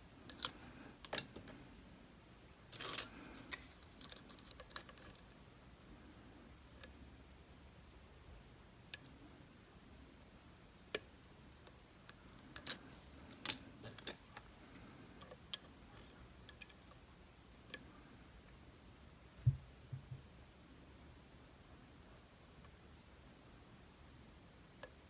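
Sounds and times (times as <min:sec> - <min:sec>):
lock picks clicking: 0:00.3 - 0:01.2
dull low knock: 0:19.4 - 0:20.2.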